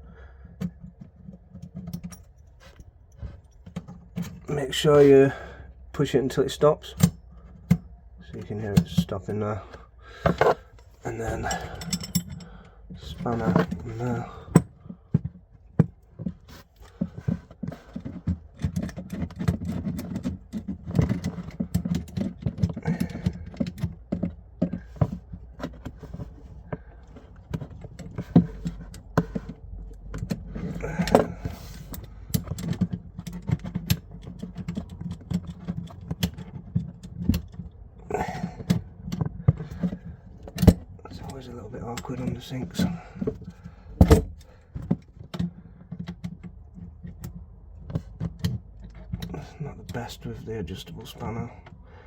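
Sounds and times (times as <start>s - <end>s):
spanner clicking and scraping on pipe: 6.8s - 51.8s.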